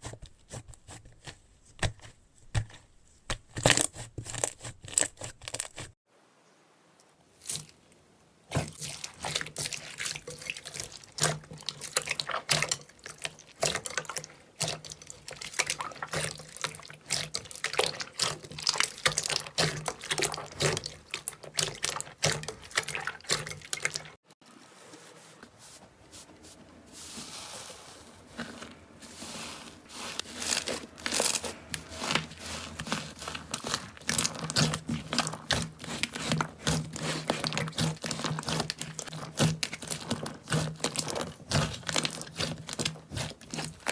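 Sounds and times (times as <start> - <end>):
slime squelching and popping: 8.5 - 24.2, 29.9 - 43.9.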